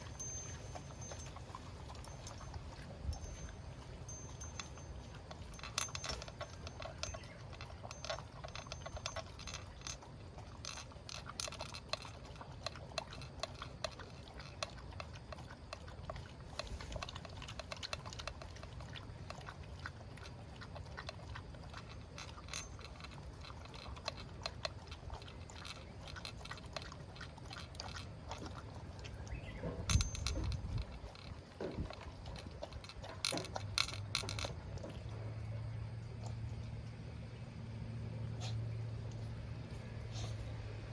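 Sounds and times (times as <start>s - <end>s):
pet chewing food from dish: 0.0s - 37.2s.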